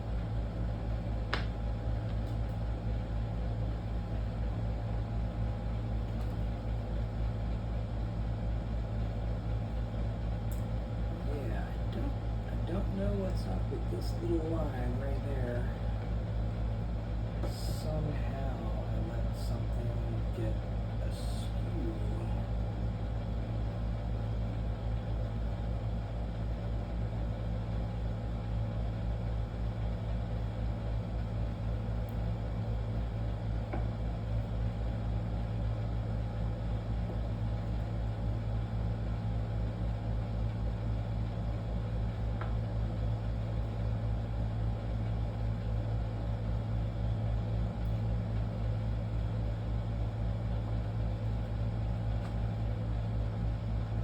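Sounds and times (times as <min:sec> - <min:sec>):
low machine hum: 0:00.0 - 0:54.0.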